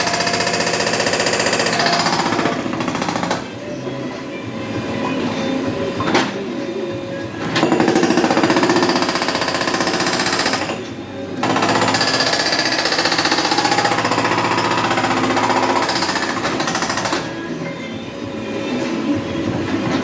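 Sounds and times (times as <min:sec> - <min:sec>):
hydraulic breaker hammering: 0:00.0 - 0:03.6, 0:07.4 - 0:17.6.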